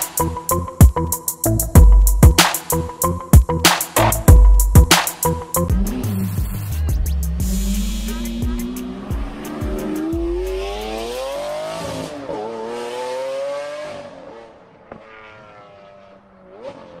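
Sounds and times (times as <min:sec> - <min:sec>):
car engine revving: 0:05.2 - 0:17.0.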